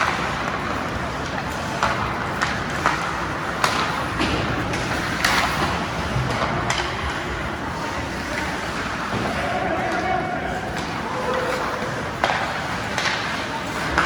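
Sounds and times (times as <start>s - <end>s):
hockey stick and puck knocks: 0.0s - 7.2s, 10.7s - 14.0s
arena noise: 0.0s - 14.0s.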